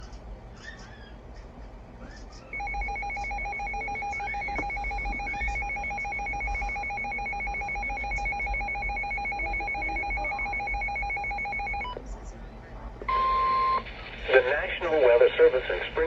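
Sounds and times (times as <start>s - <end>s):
pulsed electronic alarm beeping: 2.5s - 12.0s, 13.1s - 13.8s.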